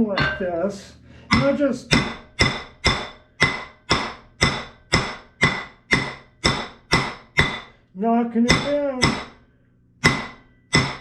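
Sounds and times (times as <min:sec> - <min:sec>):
hammer blows ringing: 0:01.3 - 0:07.8, 0:08.5 - 0:09.4, 0:10.0 - 0:11.0.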